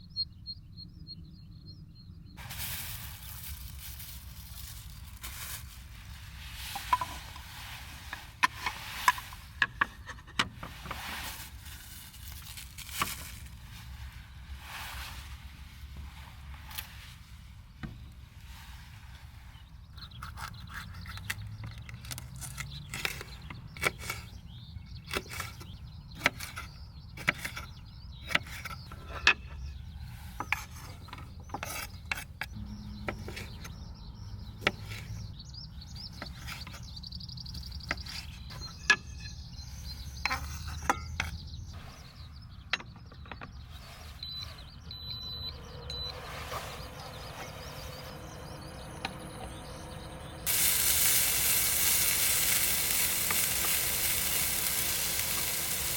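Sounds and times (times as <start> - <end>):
objects clicking and tapping: 6.7 - 11.0
low steady rumble: 44.9 - 55.8.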